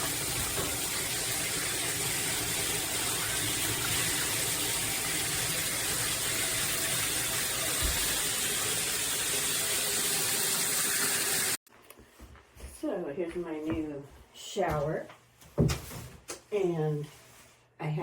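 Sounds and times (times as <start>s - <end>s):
shower spraying water: 0.0s - 11.6s.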